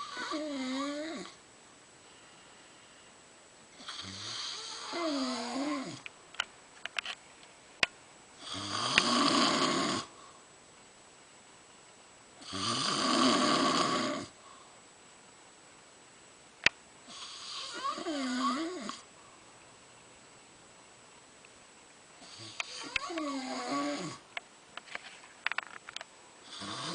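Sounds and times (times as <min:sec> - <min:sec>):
woman snoring: 0:00.0 - 0:01.4, 0:03.8 - 0:06.0, 0:08.4 - 0:10.1, 0:12.4 - 0:14.4, 0:17.1 - 0:19.1, 0:22.2 - 0:24.2, 0:26.4 - 0:26.9.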